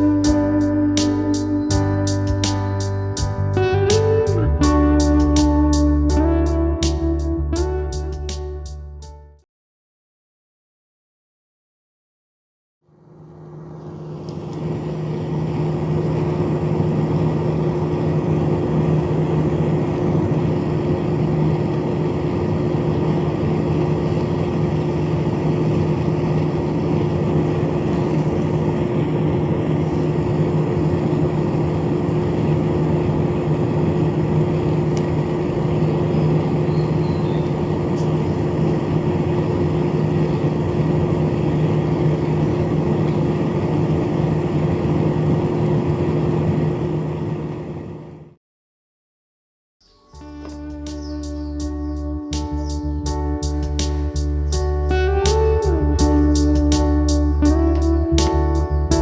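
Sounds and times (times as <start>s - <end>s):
air conditioner fan humming: 0.0s - 7.1s, 12.9s - 48.3s.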